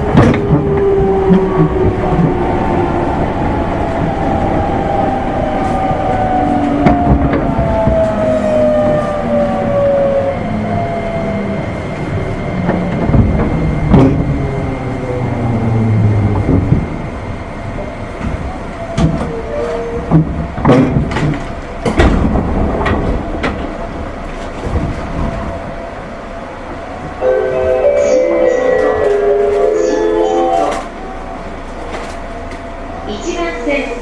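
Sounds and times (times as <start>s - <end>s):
train wheels rumbling on rails: 0.0s - 34.0s
wheels clacking over rail joints: 5.8s - 9.1s, 18.1s - 25.7s.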